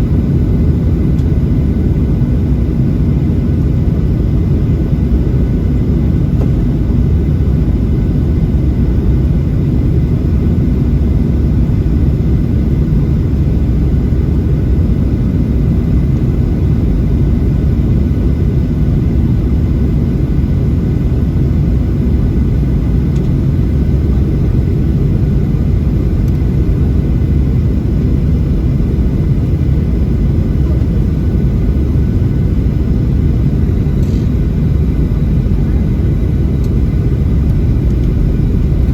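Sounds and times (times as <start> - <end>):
jet engine cabin rumble: 0.0 - 38.9
faint whining tones: 22.4 - 38.9.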